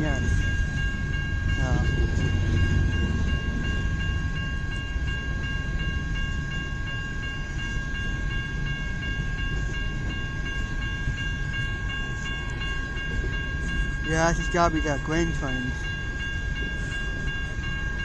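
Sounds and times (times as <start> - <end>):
high pulsing ringing: 0.0 - 18.0
train wheels rumbling on rails: 0.0 - 18.0.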